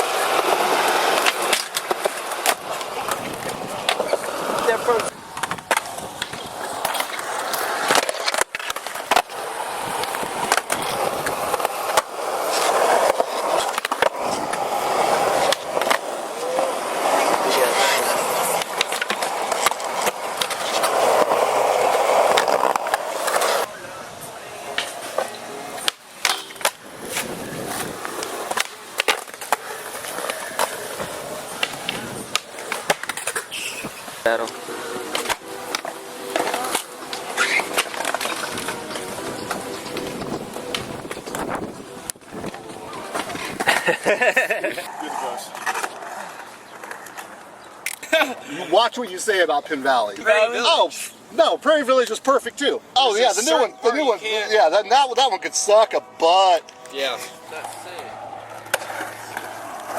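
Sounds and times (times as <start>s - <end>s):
skateboard clacking on ground: 0.0s - 48.4s, 53.2s - 59.9s
skateboard wheels rolling: 0.0s - 59.9s.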